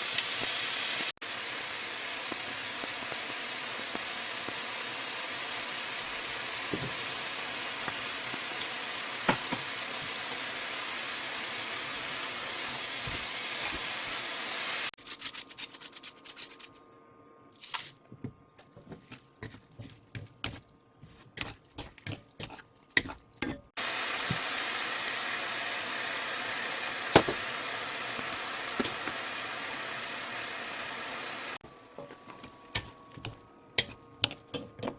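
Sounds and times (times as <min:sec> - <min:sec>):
food sizzling in frying pan: 0:00.0 - 0:15.0, 0:23.7 - 0:33.4.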